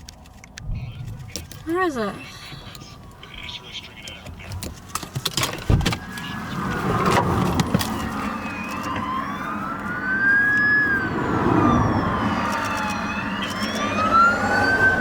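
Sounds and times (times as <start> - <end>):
steady low rumble: 0.0 - 3.8
siren wailing: 6.0 - 15.0.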